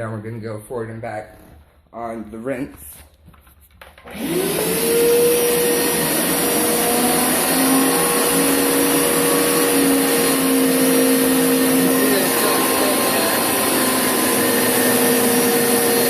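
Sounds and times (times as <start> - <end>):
carpet cleaner motor whine: 3.9 - 16.0
suction rush: 4.1 - 16.0.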